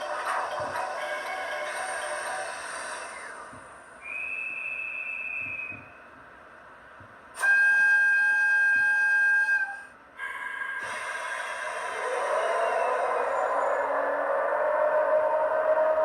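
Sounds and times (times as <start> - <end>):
model locomotive whistle: 4.0 - 5.8, 7.4 - 10.0, 10.8 - 16.0
model locomotive running whine: 7.4 - 16.0.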